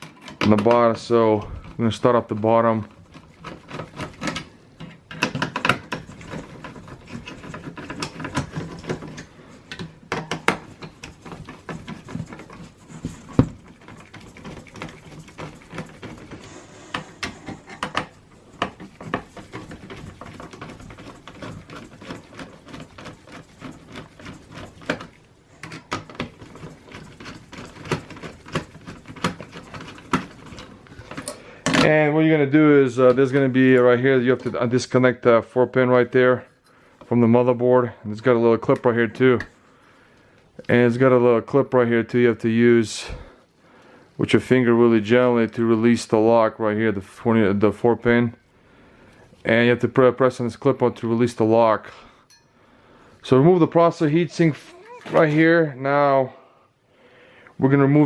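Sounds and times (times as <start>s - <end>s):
screwdriver clicking and scraping screws: 2.9s - 31.4s.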